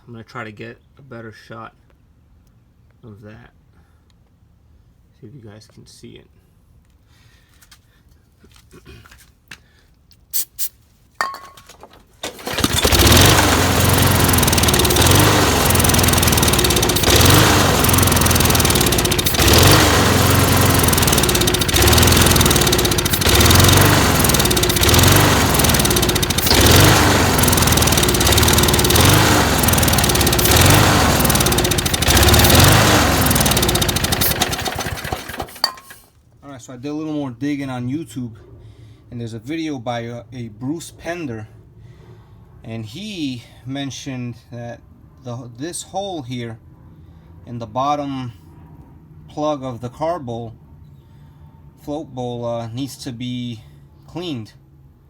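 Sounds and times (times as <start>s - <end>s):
lawn mower engine surging: 12.2s - 36.0s.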